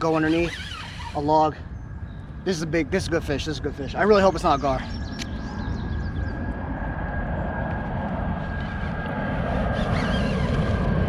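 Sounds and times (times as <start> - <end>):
motorboat engine drone: 0.0 - 2.4, 5.0 - 11.0.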